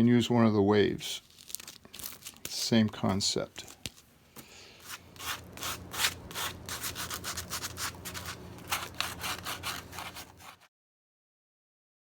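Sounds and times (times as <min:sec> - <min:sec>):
sandpaper rubbing on wood: 0:04.8 - 0:10.7.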